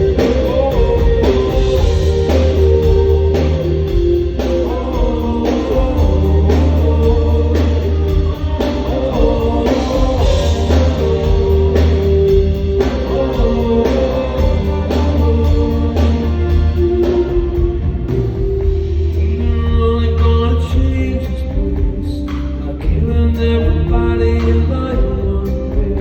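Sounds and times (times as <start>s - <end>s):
drum beat: 0.0s - 22.0s
sustained electric guitar notes: 0.0s - 22.1s
steady bass line: 0.0s - 26.0s.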